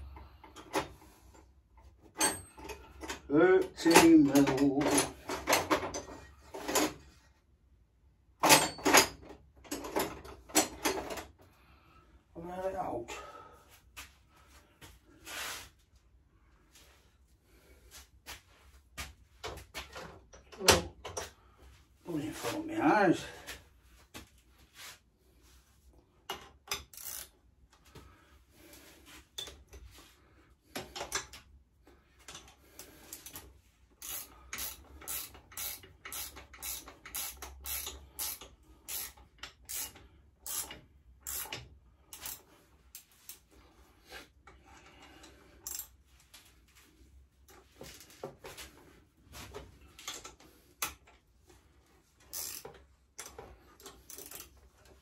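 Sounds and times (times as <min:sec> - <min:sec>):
ratchet spanner clicking: 0:26.7 - 0:27.4, 0:34.0 - 0:42.4, 0:45.6 - 0:45.9, 0:52.3 - 0:54.5.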